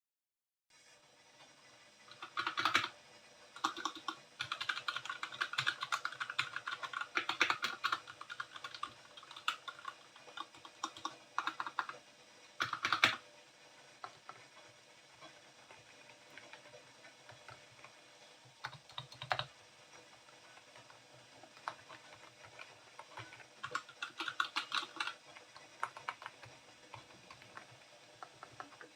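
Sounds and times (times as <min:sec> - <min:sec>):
mechanical keyboard typing: 0:02.1 - 0:02.9, 0:03.6 - 0:12.0, 0:12.6 - 0:13.2, 0:16.1 - 0:17.9, 0:18.6 - 0:19.5, 0:20.5 - 0:28.9.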